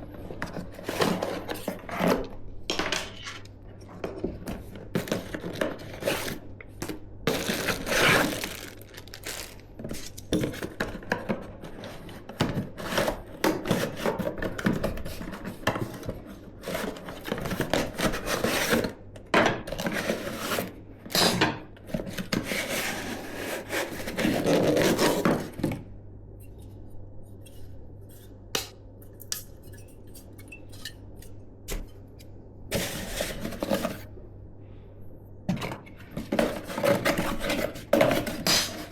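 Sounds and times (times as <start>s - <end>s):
hands rubbing and scraping packaging: 4.5s - 19.0s, 22.0s - 25.7s, 32.7s - 34.1s, 36.2s - 38.9s.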